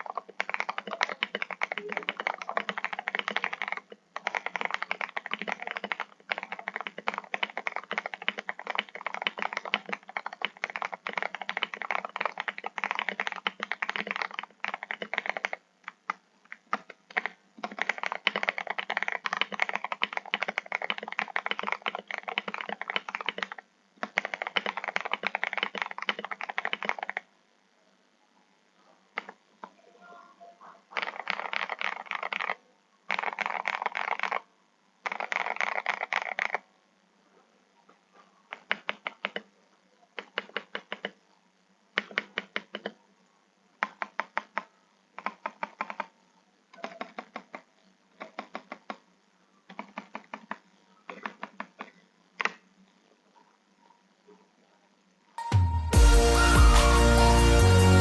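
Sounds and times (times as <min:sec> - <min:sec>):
fast typing on mechanical keyboard: 0:00.0 - 0:27.3, 0:31.0 - 0:36.7, 0:38.5 - 0:39.5, 0:40.2 - 0:41.2, 0:42.0 - 0:43.0, 0:43.8 - 0:46.1, 0:46.8 - 0:49.0, 0:49.7 - 0:52.6.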